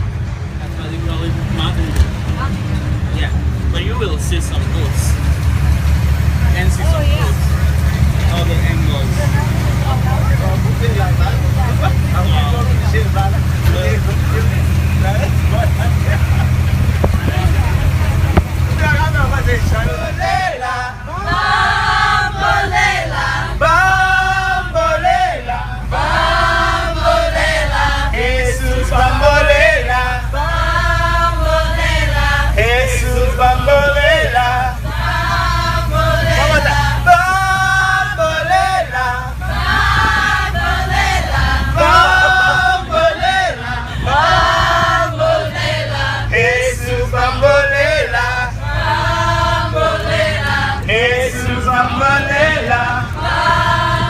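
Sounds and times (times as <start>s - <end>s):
bus engine rumble: 0.0s - 54.0s
group of people singing: 12.2s - 54.0s.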